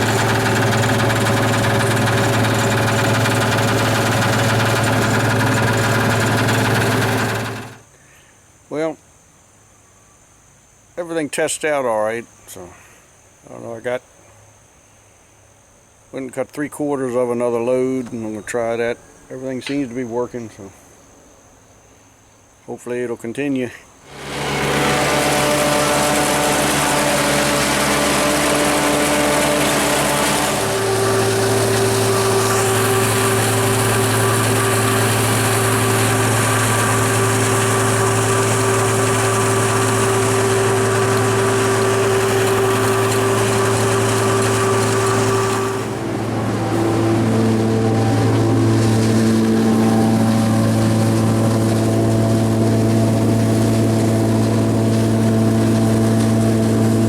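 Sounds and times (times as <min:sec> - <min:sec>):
tractor engine drone: 0:00.0 - 0:07.8, 0:24.0 - 0:57.0.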